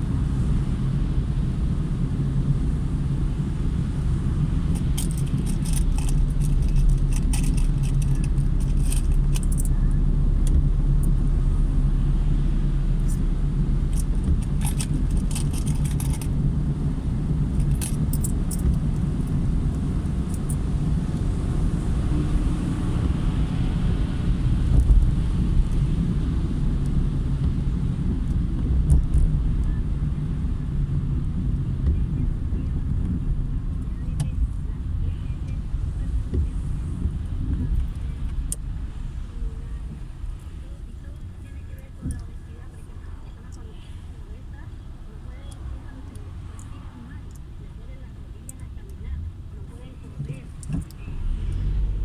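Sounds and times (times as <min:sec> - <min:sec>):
car driving on wet road: 0:00.0 - 0:52.0
light high clicking or jingling: 0:04.7 - 0:11.2, 0:13.9 - 0:16.5, 0:17.5 - 0:19.4.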